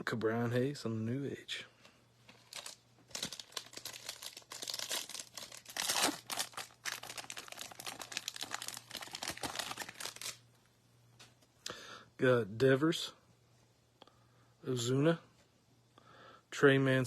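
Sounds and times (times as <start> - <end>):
plastic wrapper crinkling and tearing: 2.3 - 10.4.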